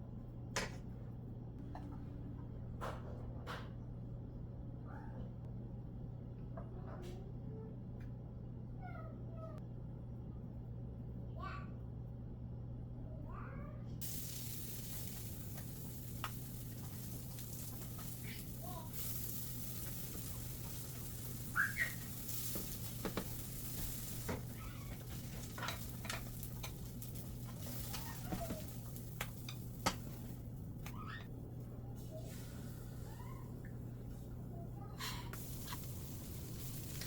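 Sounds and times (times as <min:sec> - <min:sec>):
food sizzling in a pan: 0:14.0 - 0:31.2, 0:35.3 - 0:37.0.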